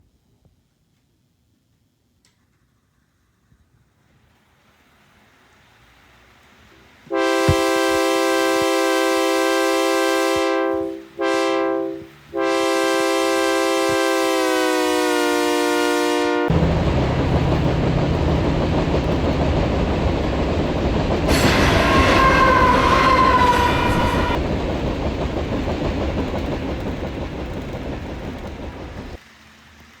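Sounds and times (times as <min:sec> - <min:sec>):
freight train rumbling by: 0:04.2 - 0:30.0
locomotive air horn blasts: 0:07.1 - 0:17.4, 0:21.3 - 0:24.4
wheel squeal: 0:21.3 - 0:24.4.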